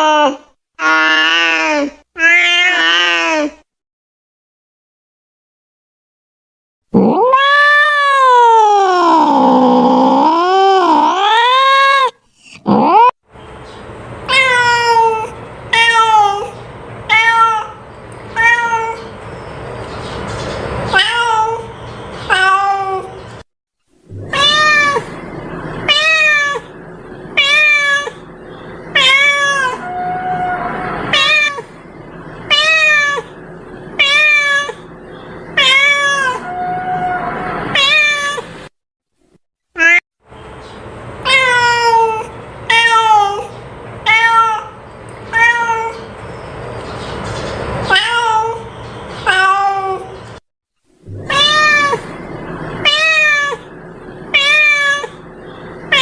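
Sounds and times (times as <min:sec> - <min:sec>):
cat meowing: 0:00.0 - 0:03.6, 0:07.0 - 0:12.1, 0:14.3 - 0:19.1, 0:20.9 - 0:21.7, 0:22.3 - 0:23.2, 0:24.1 - 0:25.2, 0:25.8 - 0:26.8, 0:27.4 - 0:28.3, 0:28.9 - 0:31.7, 0:32.5 - 0:33.4, 0:34.0 - 0:34.9, 0:35.5 - 0:38.5, 0:39.8 - 0:40.0, 0:41.2 - 0:46.1, 0:47.9 - 0:50.2, 0:51.1 - 0:52.2, 0:52.8 - 0:53.7, 0:54.3 - 0:55.2.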